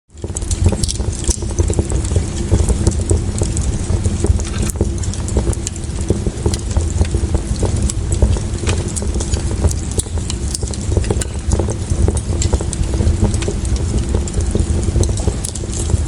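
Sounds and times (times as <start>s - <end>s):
wood fire crackling: 0.1s - 16.0s
faint hum: 0.2s - 16.0s
low rumble: 0.2s - 16.0s.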